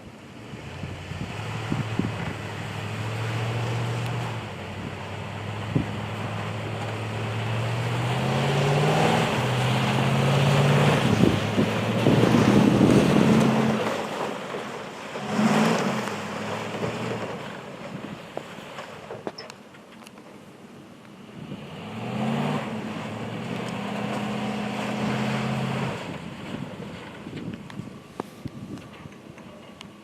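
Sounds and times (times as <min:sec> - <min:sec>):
pickup truck engine revving: 0:00.4 - 0:18.8, 0:21.3 - 0:28.0
loud rushing noise: 0:07.4 - 0:14.4.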